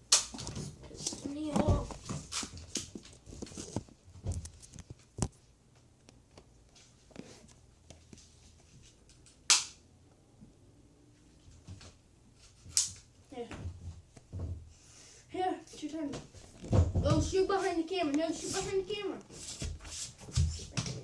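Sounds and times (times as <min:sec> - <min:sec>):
bb gun crack: 0:00.1 - 0:00.4, 0:09.4 - 0:09.8.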